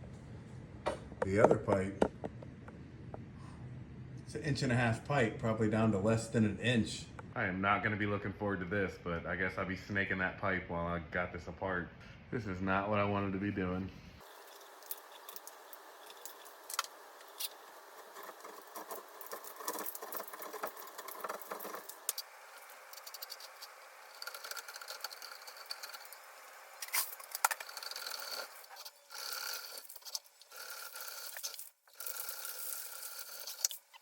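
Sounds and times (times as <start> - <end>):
drain snake scraping in metal pipe: 14.2 - 34.0.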